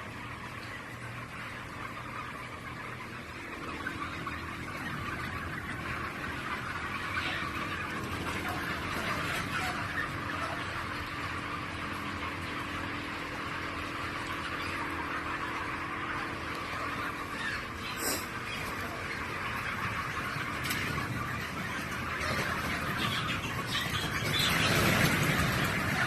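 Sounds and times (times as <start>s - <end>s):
poultry chattering: 0.0s - 26.0s.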